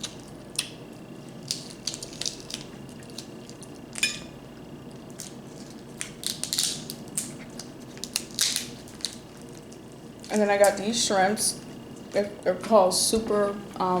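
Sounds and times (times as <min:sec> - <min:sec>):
crab shells cracking and crunching: 0:00.0 - 0:10.9.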